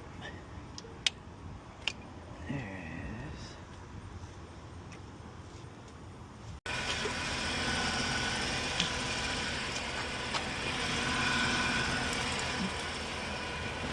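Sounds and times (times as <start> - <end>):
car engine idling: 6.7 - 13.9.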